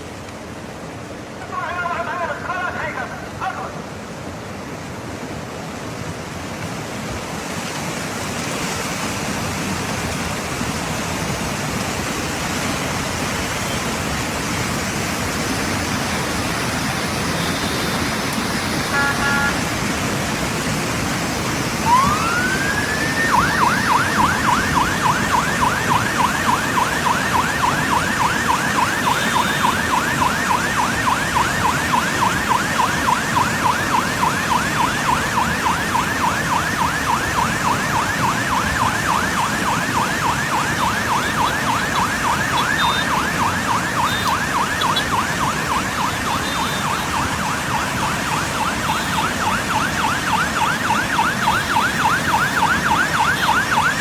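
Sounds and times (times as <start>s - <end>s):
road traffic noise: 0.0s - 54.0s
electronic siren wailing and yelping: 15.7s - 19.8s, 21.7s - 54.0s.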